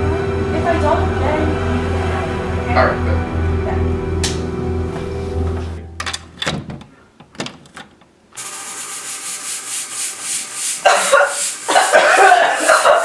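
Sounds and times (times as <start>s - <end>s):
background music: 0.0s - 6.8s
rasping rushing hiss: 8.4s - 13.0s.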